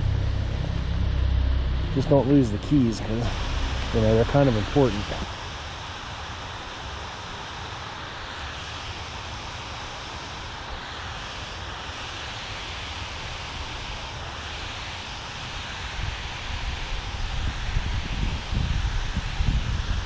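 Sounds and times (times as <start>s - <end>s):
wind rumble on microphone: 0.0s - 7.8s, 11.7s - 20.0s
outdoor background hiss: 0.0s - 20.0s.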